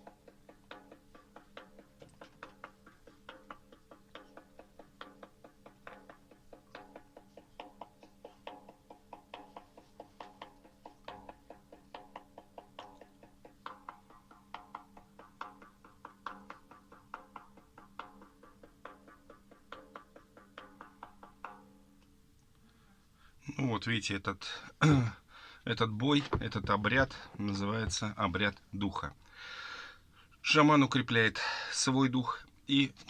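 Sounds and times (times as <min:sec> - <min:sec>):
frame drum beaten: 0:25.8 - 0:28.2.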